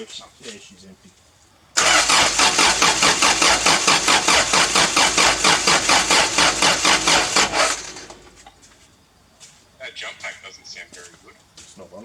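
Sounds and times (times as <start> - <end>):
starter motor cranking engine: 1.8 - 8.7.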